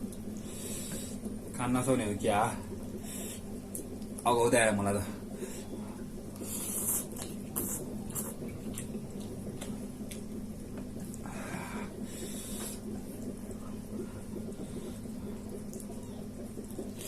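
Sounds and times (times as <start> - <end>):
steady low hum: 0.0 - 17.0
person sucking noodles: 6.4 - 8.5.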